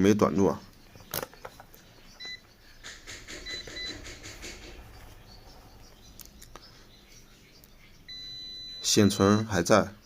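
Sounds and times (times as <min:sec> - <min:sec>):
clicks and rustles of probes: 0:01.0 - 0:04.7
multimeter short beeps: 0:03.4 - 0:04.0, 0:08.1 - 0:09.5.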